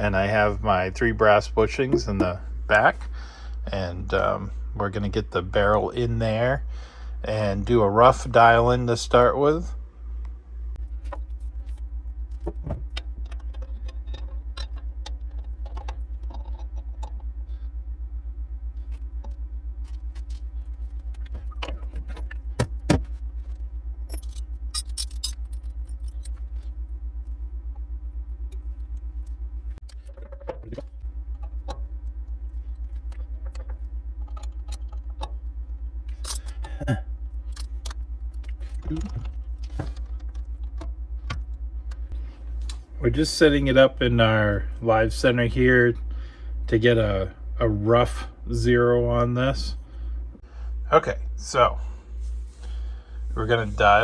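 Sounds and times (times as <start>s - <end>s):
steady low hum: 0.0s - 54.0s
metal parts and tools clinking: 24.0s - 26.6s, 36.1s - 36.8s.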